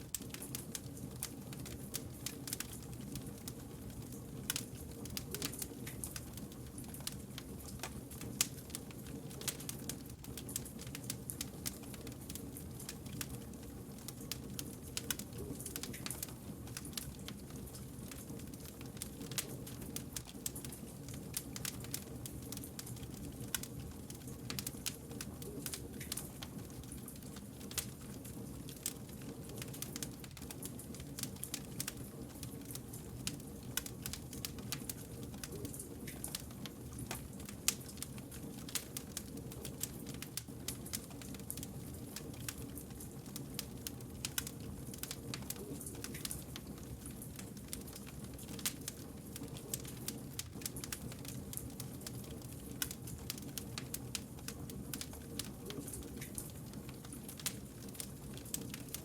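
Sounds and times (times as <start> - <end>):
low rush of burning logs: 0.0 - 59.0
wood fire crackling: 0.0 - 59.0.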